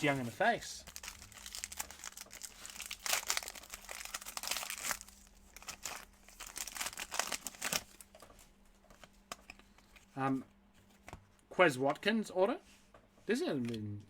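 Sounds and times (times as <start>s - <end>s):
wrappers and cards crinkling: 0.0s - 10.1s.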